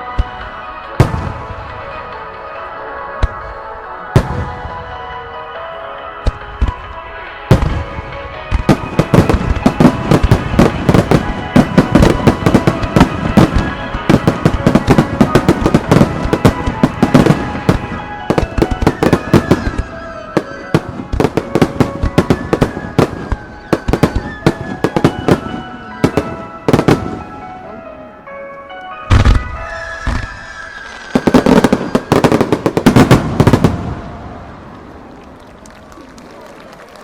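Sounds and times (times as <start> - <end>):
music: 0.0 - 34.6
fireworks shells bursting: 29.1 - 33.9.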